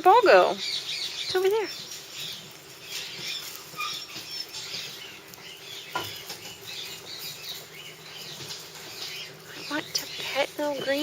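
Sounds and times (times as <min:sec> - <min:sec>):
puppies chewing: 0:00.6 - 0:11.0
small pattering sounds: 0:01.2 - 0:11.0
high puppy squeaks: 0:03.3 - 0:04.8.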